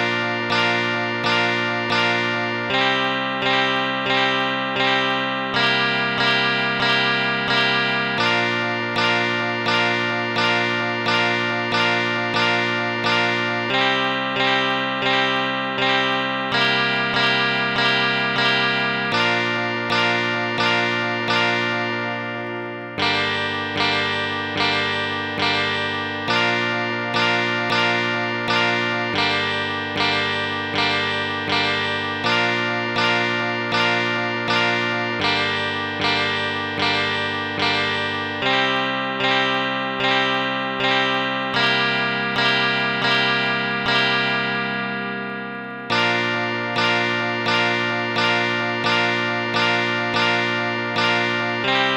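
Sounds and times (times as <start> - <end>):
plucked guitar-like chords: 0.0 - 51.9.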